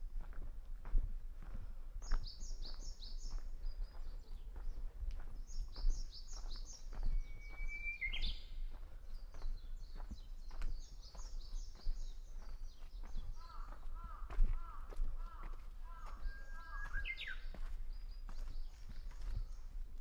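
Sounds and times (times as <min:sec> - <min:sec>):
bird whistled song: 0:05.8 - 0:08.7, 0:16.3 - 0:17.5.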